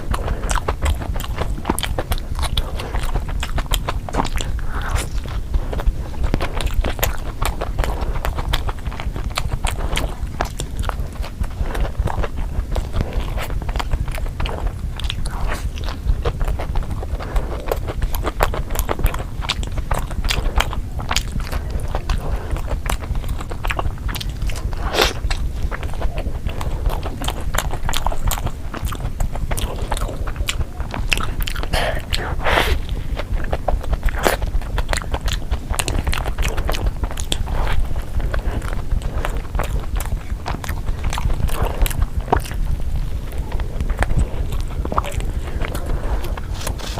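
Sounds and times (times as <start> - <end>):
chewing and crunching pizza: 0.0 - 46.9
mouth clicks: 0.0 - 46.9
steady low rumble: 0.0 - 46.9.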